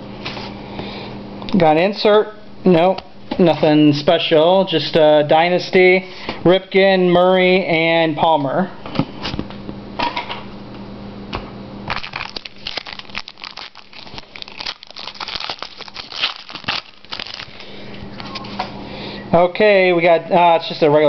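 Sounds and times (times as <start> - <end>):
wrapper crinkling and tearing: 11.9 - 17.7.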